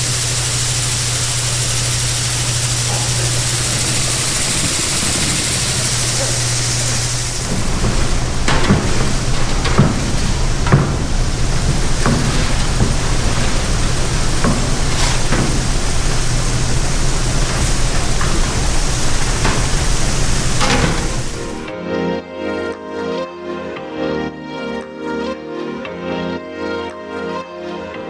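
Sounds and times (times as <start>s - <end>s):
loud even hiss: 0.0s - 21.7s
machinery humming: 0.0s - 21.7s
sharp knocks and clanks: 0.0s - 21.7s.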